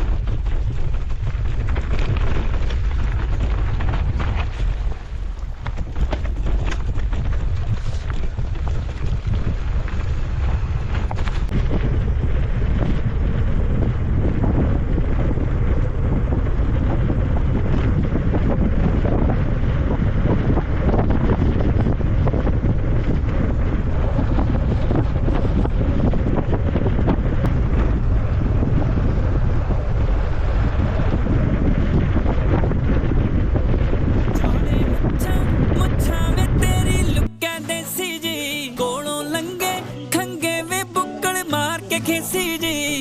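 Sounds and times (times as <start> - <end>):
bike knocking over ground: 0.0 - 19.3
wind buffeting microphone: 0.0 - 37.5.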